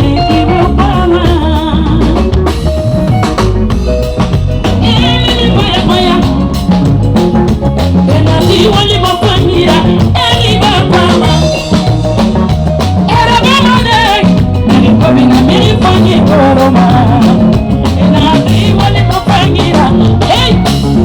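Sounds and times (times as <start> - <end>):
person singing: 0.0 - 2.7, 4.6 - 6.9, 7.9 - 12.1, 13.0 - 21.0.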